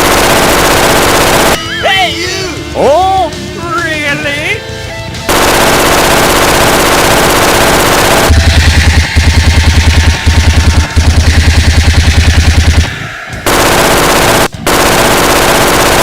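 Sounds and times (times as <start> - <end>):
automatic machine-gun fire: 0.0 - 1.6, 5.3 - 16.0.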